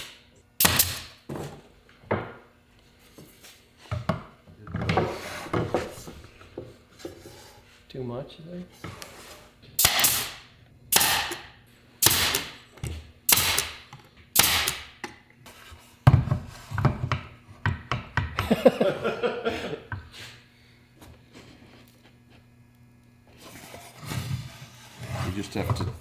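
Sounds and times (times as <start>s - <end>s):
tool strikes on wood: 0.0s - 2.5s, 9.8s - 15.2s, 16.1s - 18.5s
clattering and handling noise: 1.2s - 7.9s, 15.0s - 18.5s, 21.0s - 26.0s.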